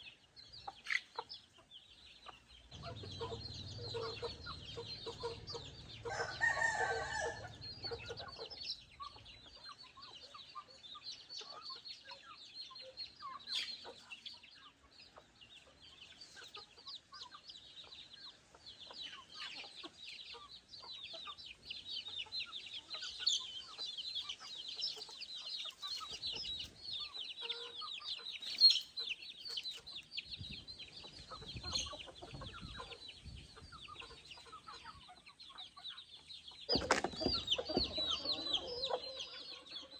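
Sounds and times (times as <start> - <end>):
chickens clucking: 0.0 - 39.9
rooster crowing: 6.0 - 8.0.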